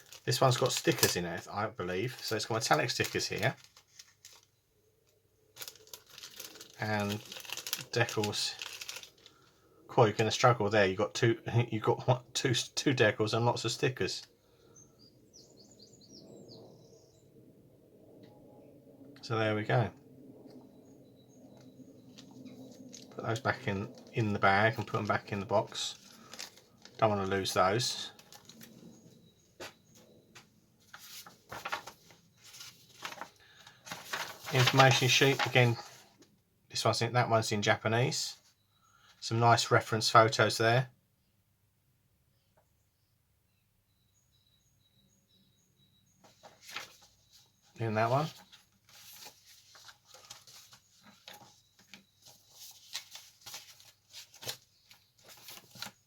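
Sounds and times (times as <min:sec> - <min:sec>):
plastic bag rustling: 0:00.0 - 0:01.4, 0:02.0 - 0:04.6, 0:05.6 - 0:09.4, 0:22.2 - 0:29.1, 0:30.8 - 0:36.0, 0:48.0 - 0:56.0.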